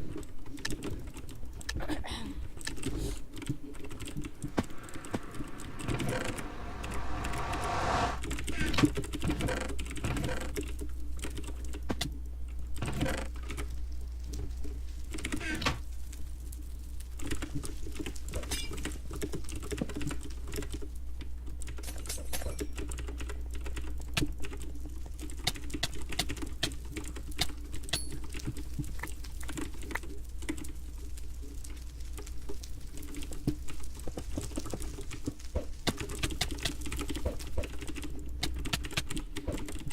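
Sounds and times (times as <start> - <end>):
steady low hum: 4.1 - 8.2.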